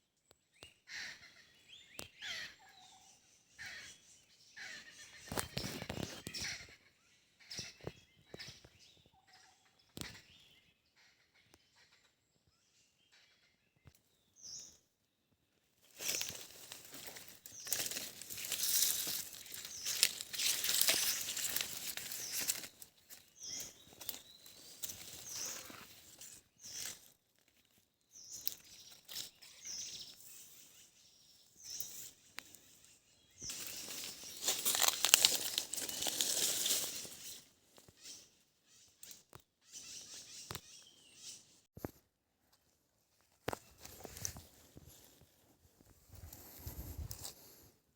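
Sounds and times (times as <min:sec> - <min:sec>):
faint bird chirps: 0:15.8 - 0:27.1, 0:28.0 - 0:41.7
crackling crinkling rustle: 0:15.8 - 0:29.4, 0:33.5 - 0:37.4.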